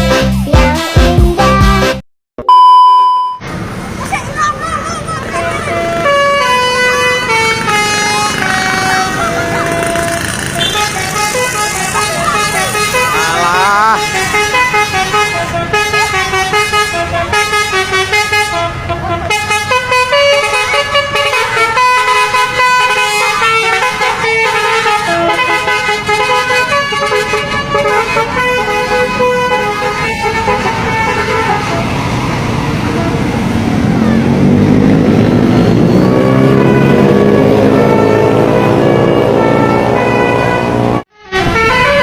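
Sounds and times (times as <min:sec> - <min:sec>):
musical bus horn playing tune: 0:00.0 - 0:02.0, 0:05.4 - 0:32.0, 0:35.1 - 0:42.0
vehicle noise: 0:02.5 - 0:42.0.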